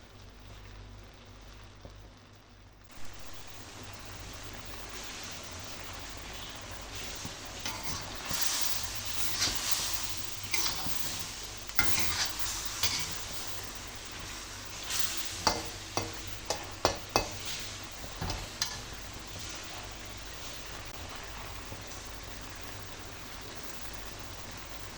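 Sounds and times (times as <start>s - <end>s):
food sizzling in a pan: 0.0s - 24.9s
utensil scraping and clinking pan: 10.4s - 13.4s, 15.4s - 19.0s.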